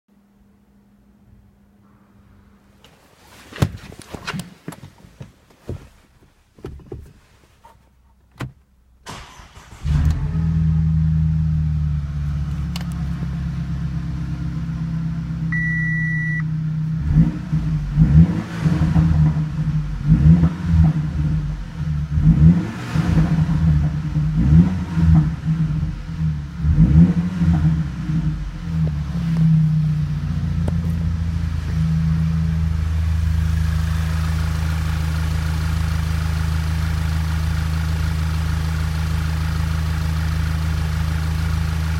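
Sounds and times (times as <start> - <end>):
car engine starting and idling: 0.4 - 41.9
car engine revving: 9.1 - 15.7, 16.4 - 41.9
short beep: 15.5 - 16.5.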